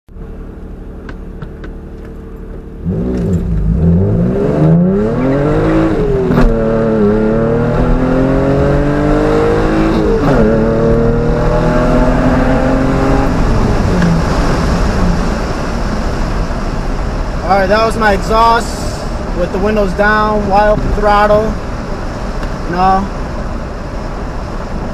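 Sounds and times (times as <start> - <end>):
car engine revving through gears: 1.0 - 16.0.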